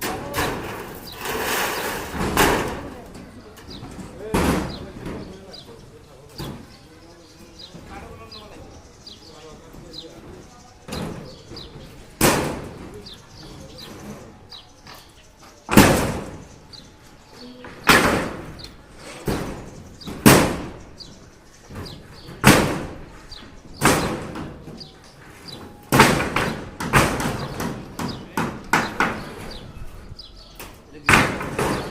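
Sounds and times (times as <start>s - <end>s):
loud heavy knocks: 4.2s - 5.4s, 10.9s - 13.2s, 19.2s - 21.0s, 21.7s - 24.8s, 25.9s - 29.6s, 31.1s - 31.9s.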